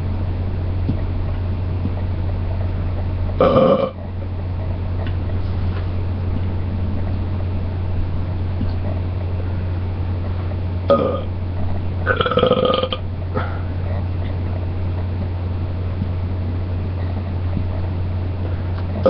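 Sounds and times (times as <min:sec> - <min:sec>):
steady low hum: 0:00.0 - 0:19.0
person belching: 0:03.4 - 0:04.0, 0:10.9 - 0:11.3, 0:12.1 - 0:13.6.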